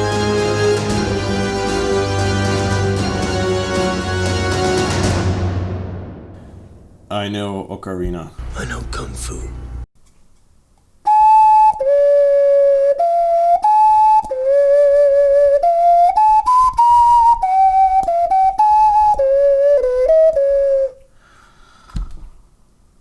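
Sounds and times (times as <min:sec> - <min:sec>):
ocarina playing simple tune: 0:11.1 - 0:21.0.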